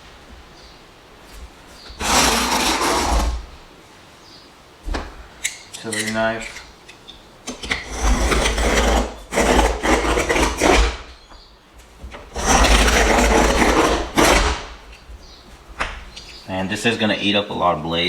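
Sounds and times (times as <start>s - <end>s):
knife scraping cement board: 1.9s - 3.6s, 7.5s - 11.3s, 12.1s - 14.8s.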